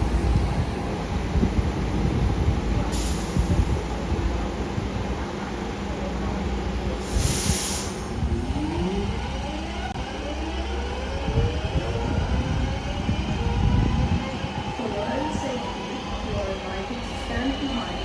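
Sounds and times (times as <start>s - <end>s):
rising train tones: 0.0s - 18.0s
train rumble: 0.0s - 18.0s
air hissing: 7.0s - 8.1s.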